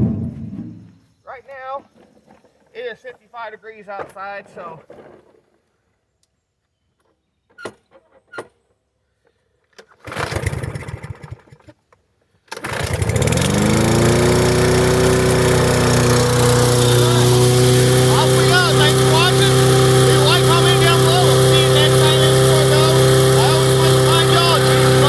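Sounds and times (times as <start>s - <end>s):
lawn mower engine starting: 0.0s - 1.0s, 9.8s - 11.8s, 12.4s - 25.0s.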